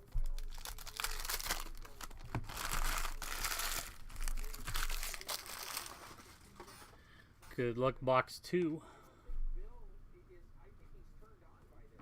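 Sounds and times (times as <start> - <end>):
wrapper crinkling and tearing: 0.0 - 6.5.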